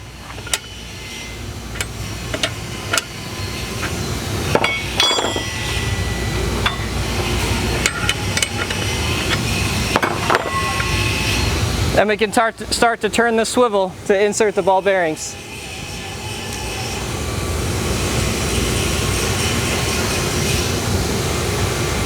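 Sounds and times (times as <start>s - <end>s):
steady low hum: 0.0s - 22.0s
wrench clinking on metal: 0.4s - 0.8s, 3.8s - 5.8s, 7.7s - 9.4s.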